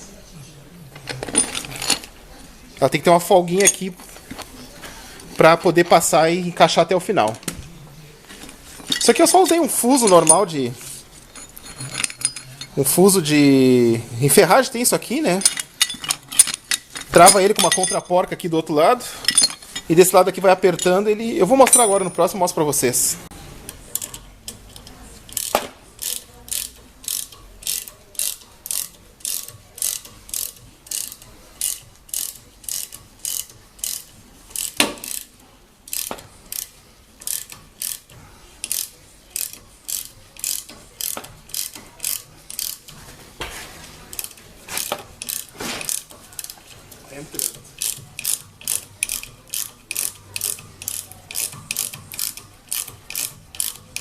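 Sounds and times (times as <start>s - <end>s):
ratchet wrench clicking: 11.2s - 12.7s, 15.2s - 18.1s, 23.7s - 43.0s, 44.1s - 46.8s, 47.4s - 54.0s.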